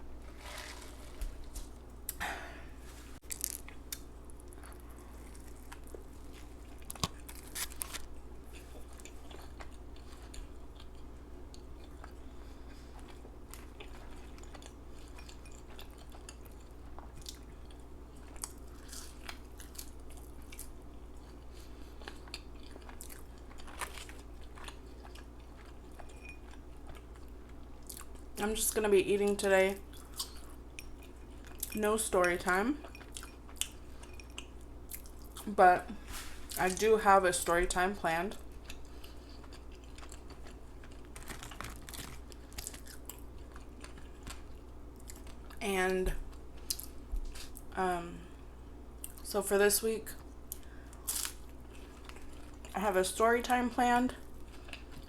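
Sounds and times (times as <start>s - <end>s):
person chewing food: 2.8s - 28.3s, 29.9s - 31.8s, 32.8s - 35.4s, 38.3s - 45.6s, 50.2s - 52.7s, 54.2s - 55.0s.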